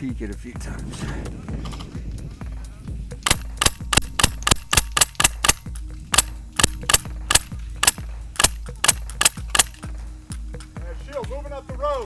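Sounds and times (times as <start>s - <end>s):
airsoft gun shots: 3.2s - 9.9s.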